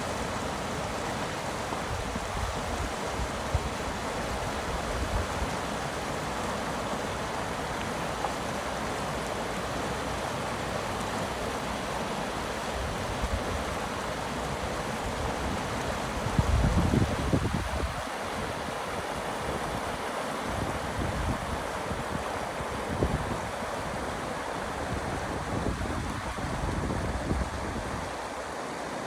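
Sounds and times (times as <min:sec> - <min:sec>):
running water rushing: 0:00.0 - 0:29.0.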